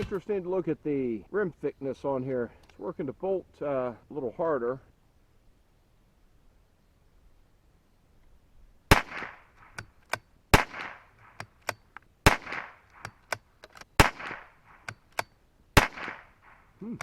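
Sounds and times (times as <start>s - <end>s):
rifle shots: 8.9s - 16.8s
rifle bolt clicks: 9.1s - 16.2s.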